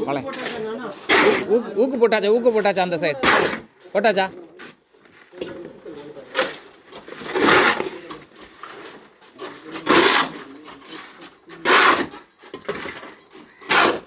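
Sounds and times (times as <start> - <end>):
wet concrete scraping and rushing: 0.1 - 1.8, 5.4 - 14.0.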